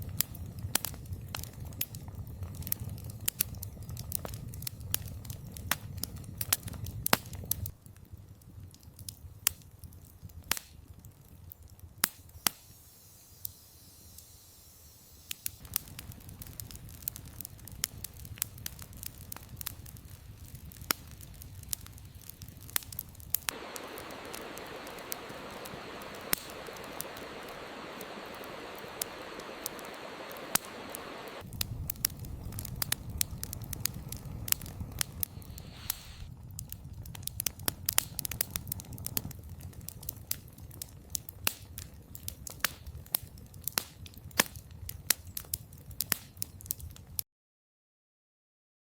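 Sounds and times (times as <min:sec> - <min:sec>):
burning logs popping: 0:00.0 - 0:47.2
campfire crackling: 0:00.0 - 0:47.2
steady hiss: 0:12.1 - 0:16.2, 0:23.4 - 0:31.5, 0:35.2 - 0:36.3.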